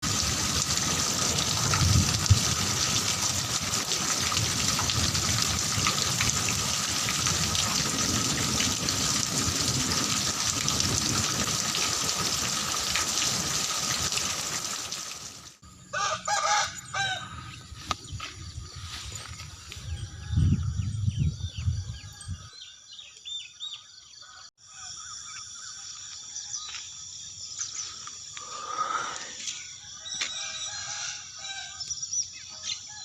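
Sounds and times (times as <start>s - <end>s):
heavy rain: 0.0s - 16.1s
rooster crowing: 15.9s - 17.6s, 29.9s - 31.9s.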